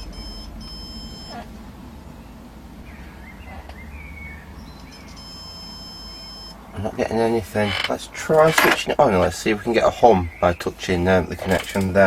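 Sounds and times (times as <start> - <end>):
continuity tester beeping: 0.0 - 1.5, 4.6 - 6.7
low hum: 0.0 - 9.0.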